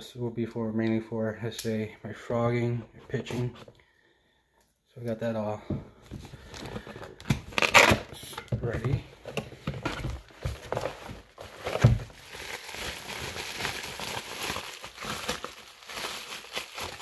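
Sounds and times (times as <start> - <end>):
packaging rustling and crinkling: 8.7 - 17.0.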